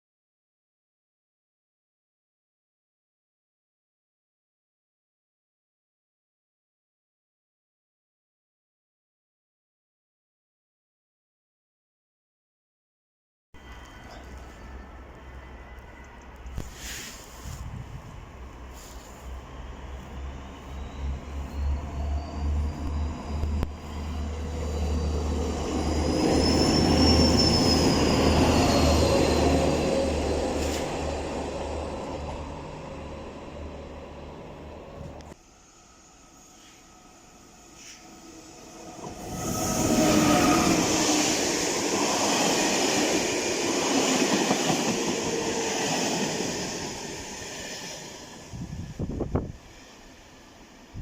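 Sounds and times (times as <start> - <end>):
train wheels rumbling on rails: 13.6 - 35.4, 37.7 - 49.8
diesel locomotives passing: 13.6 - 51.0
high whining tone: 35.4 - 44.2.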